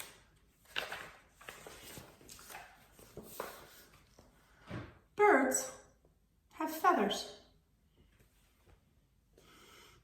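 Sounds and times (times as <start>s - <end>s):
book pages turning: 0.0s - 4.4s.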